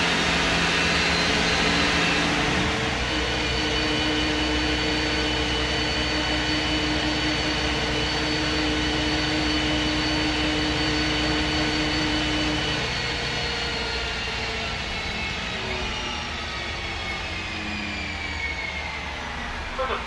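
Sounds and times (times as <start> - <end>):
bus engine low rumble: 0.0 - 20.0
steady whine: 0.0 - 20.0.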